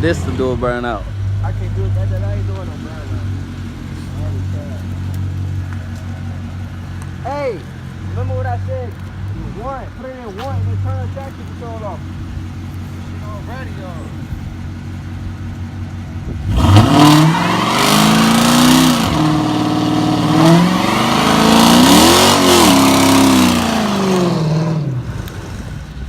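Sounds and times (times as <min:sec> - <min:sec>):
car engine revving hard: 0:16.4 - 0:26.0.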